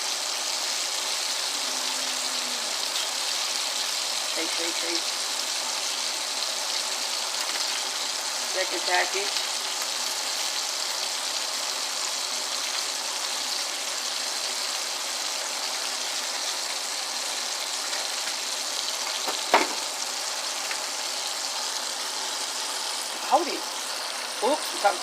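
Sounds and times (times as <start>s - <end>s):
oil sizzling in a pan: 0.0s - 25.0s
sharp knock: 19.3s - 19.9s.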